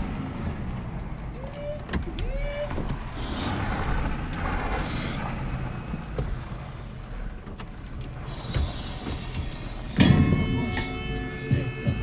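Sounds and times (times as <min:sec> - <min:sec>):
car engine low rumble: 0:00.0 - 0:12.0
light clicks and rattles: 0:00.4 - 0:10.0.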